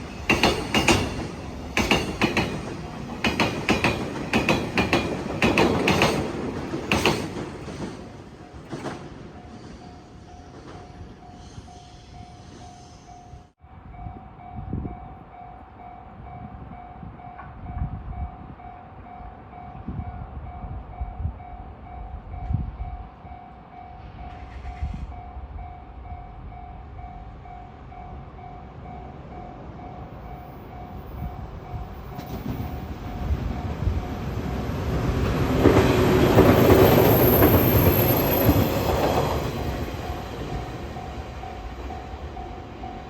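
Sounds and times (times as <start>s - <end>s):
approaching train rumble: 0.0s - 43.0s
level crossing warning bell: 25.3s - 43.0s.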